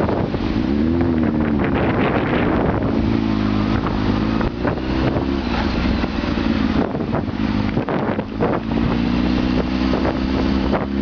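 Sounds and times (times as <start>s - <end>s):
motorcycle engine running: 0.0s - 11.0s
wind rush on microphone: 0.0s - 11.0s.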